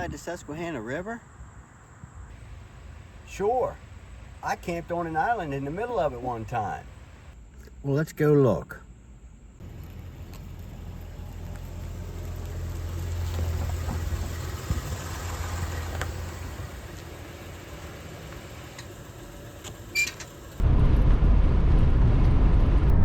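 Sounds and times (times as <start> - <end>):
vehicle engine running: 9.6 - 22.6.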